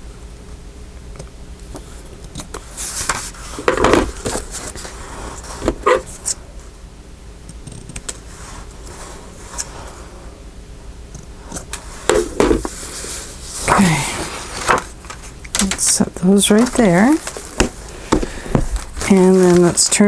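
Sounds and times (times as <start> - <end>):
paper rustling: 2.6 - 6.4, 11.7 - 20.0.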